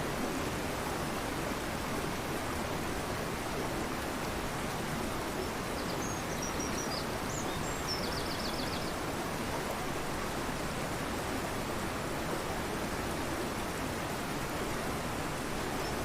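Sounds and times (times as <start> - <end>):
rushing river: 0.0 - 16.0
songbird singing: 5.8 - 8.9.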